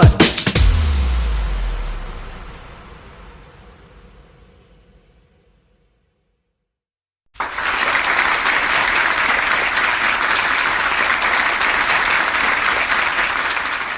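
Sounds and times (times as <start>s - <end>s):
applause: 7.3s - 13.9s.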